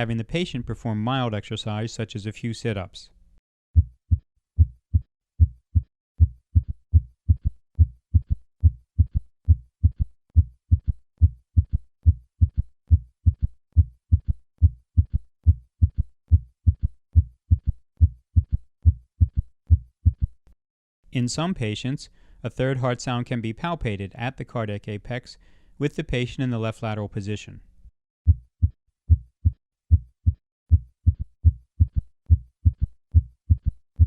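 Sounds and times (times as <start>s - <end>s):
heartbeat through stethoscope: 3.8s - 20.4s, 28.3s - 34.0s.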